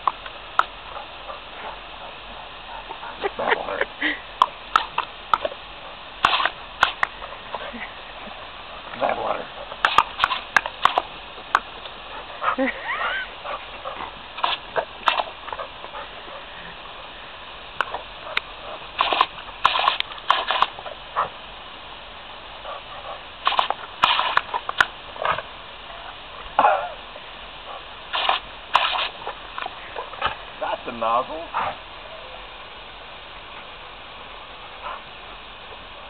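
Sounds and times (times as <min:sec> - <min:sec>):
hose water hissing: 0:00.0 - 0:36.0
dog splashing and snapping: 0:04.4 - 0:05.6, 0:06.2 - 0:07.7, 0:09.7 - 0:12.0, 0:13.4 - 0:15.7, 0:17.8 - 0:20.9, 0:23.4 - 0:25.4, 0:28.1 - 0:30.4.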